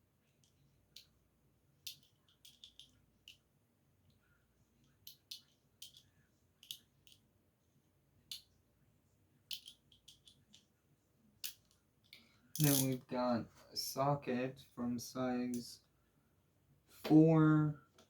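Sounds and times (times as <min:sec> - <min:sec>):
small metal tools clinking: 0:12.6 - 0:13.0.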